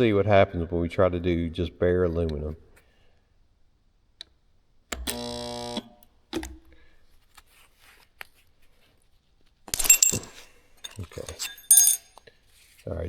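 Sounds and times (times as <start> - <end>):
welder click: 4.9 - 6.6
spot welder electrical buzz: 5.0 - 6.0.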